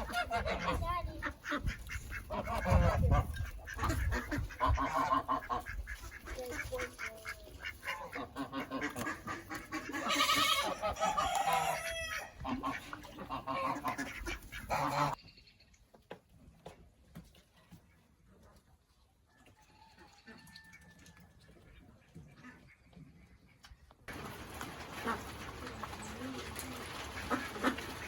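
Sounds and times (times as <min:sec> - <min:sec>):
poultry calling: 0:00.0 - 0:15.2.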